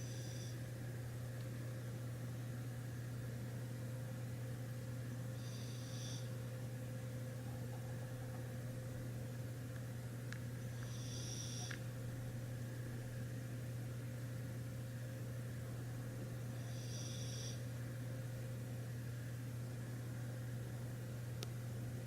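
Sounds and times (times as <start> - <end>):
steady low hum: 0.0 - 22.0
dog snoring: 5.4 - 6.3, 10.8 - 11.8, 16.6 - 17.6.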